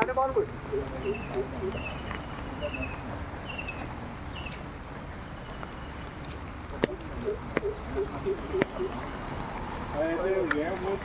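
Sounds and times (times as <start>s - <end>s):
birds chirping: 0.0s - 11.0s
flowing water rushing: 0.4s - 11.0s.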